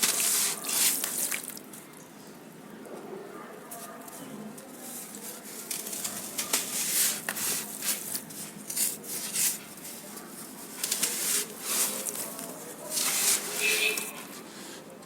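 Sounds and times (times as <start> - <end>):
sand crumbling in water: 0.0 - 1.7.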